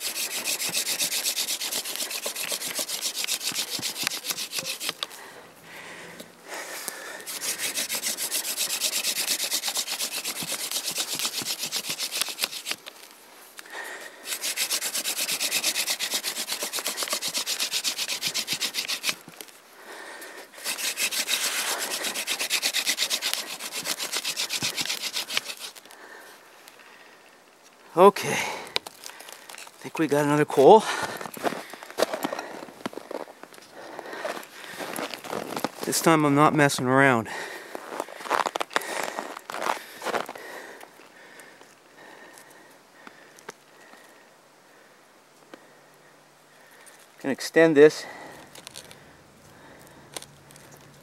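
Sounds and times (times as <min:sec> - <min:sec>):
wooden spindle rasping on board: 0:00.0 - 0:05.1, 0:07.3 - 0:12.8, 0:14.3 - 0:19.3, 0:20.6 - 0:25.8.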